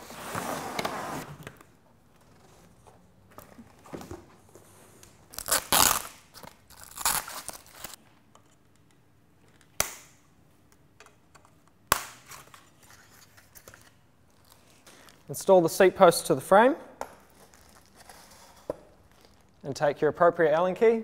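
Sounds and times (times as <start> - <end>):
packing material crinkling and tearing: 5.1 - 8.0, 17.3 - 19.6.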